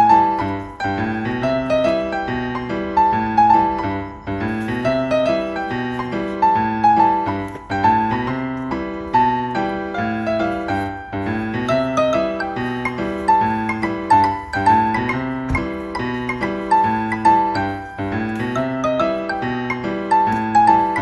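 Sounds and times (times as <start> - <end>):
gentle piano melody: 0.0 - 21.0.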